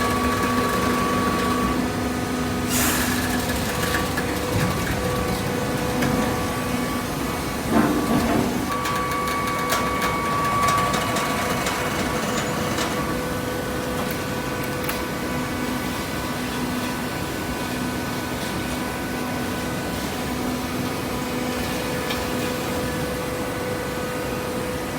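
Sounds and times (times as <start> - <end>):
baler motor and pump humming: 0.0 - 24.9.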